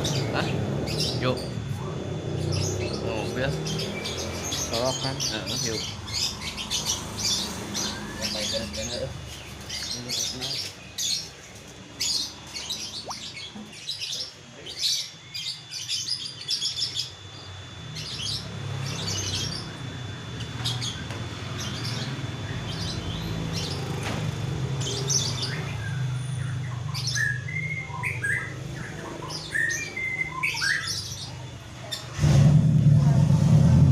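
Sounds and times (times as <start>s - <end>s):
steady low hum: 0.0s - 33.9s
songbird chirping and whistling: 12.2s - 13.5s, 25.2s - 31.3s.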